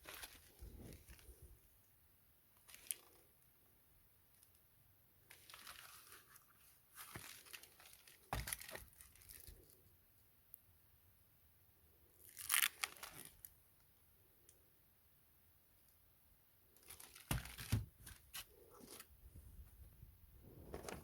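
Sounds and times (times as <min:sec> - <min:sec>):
packaging crinkling and tearing: 0:12.2 - 0:13.5, 0:16.8 - 0:19.0.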